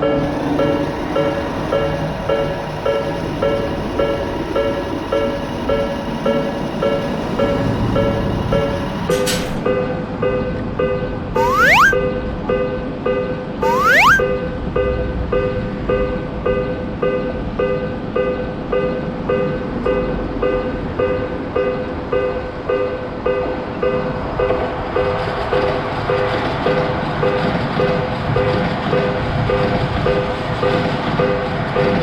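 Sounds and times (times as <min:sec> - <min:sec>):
level crossing alarm bell: 0:00.0 - 0:09.5, 0:11.4 - 0:12.0, 0:13.6 - 0:14.3.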